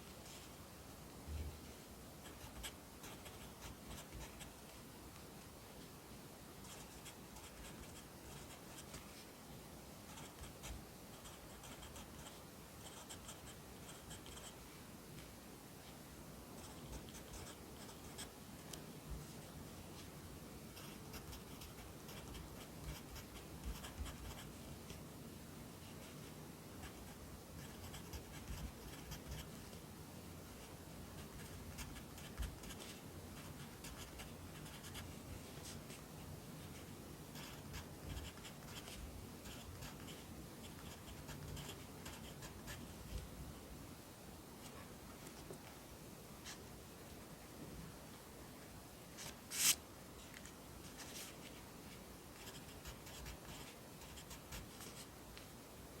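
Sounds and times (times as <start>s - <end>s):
pencil scratching on paper: 6.6s - 9.0s, 10.1s - 14.6s, 16.6s - 18.3s, 20.8s - 24.5s, 26.8s - 29.6s, 31.2s - 35.1s, 37.4s - 43.0s, 52.4s - 55.0s.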